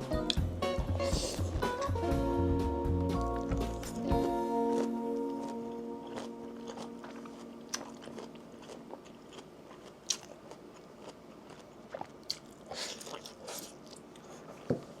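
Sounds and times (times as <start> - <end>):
person chewing crunchy food: 3.2 - 14.7.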